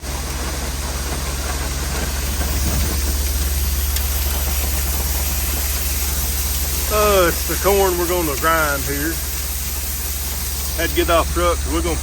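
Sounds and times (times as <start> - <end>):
constant hiss: 0.0 - 12.0
engine idling: 0.0 - 12.0.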